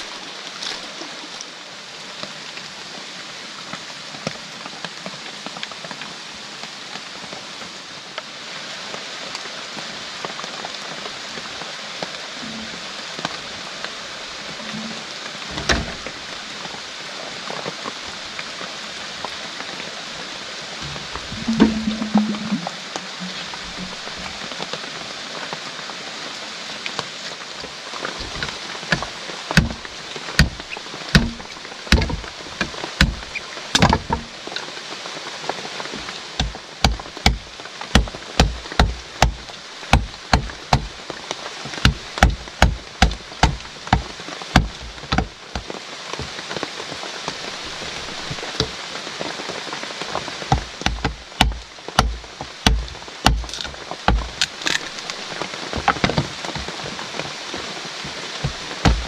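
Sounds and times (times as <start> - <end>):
rain hiss: 0.0 - 59.0
sharp knocking thuds: 20.8 - 22.7, 28.2 - 34.3, 36.4 - 40.9, 41.8 - 45.7, 50.5 - 55.0, 58.4 - 59.0.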